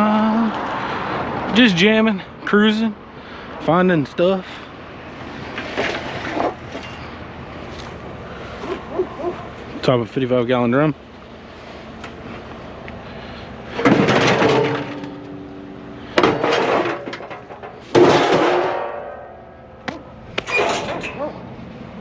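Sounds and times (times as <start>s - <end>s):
scrap metal crashing and ringing: 13.7s - 19.8s, 20.4s - 21.4s.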